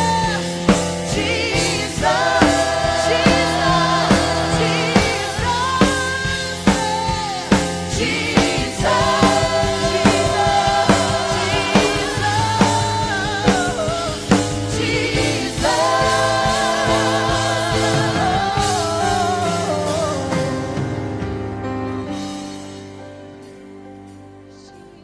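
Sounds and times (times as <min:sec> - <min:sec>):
drum beat: 0:00.0 - 0:19.6
singers with vibrato: 0:00.0 - 0:20.8
band chords: 0:00.0 - 0:25.0.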